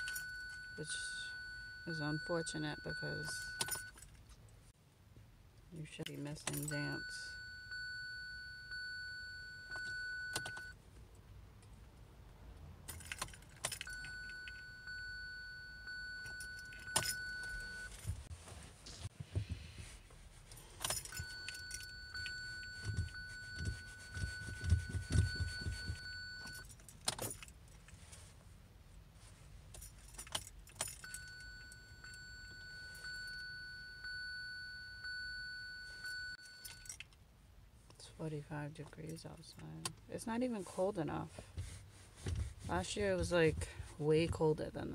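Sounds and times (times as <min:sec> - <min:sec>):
car keys jangling: 0:00.0 - 0:00.8, 0:02.4 - 0:04.5, 0:09.6 - 0:10.7, 0:12.8 - 0:18.2, 0:20.4 - 0:28.3, 0:29.3 - 0:34.3, 0:36.0 - 0:37.2.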